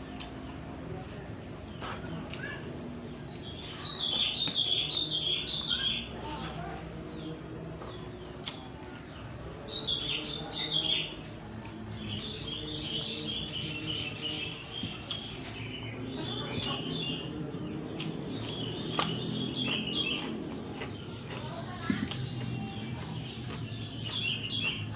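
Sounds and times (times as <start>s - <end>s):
small birds chirping: 0.0s - 24.9s
chewing clicks: 7.8s - 9.0s, 17.9s - 23.6s.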